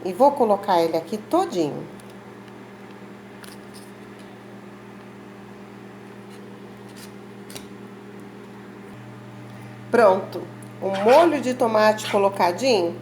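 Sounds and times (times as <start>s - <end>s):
steady low hum: 0.9s - 13.0s.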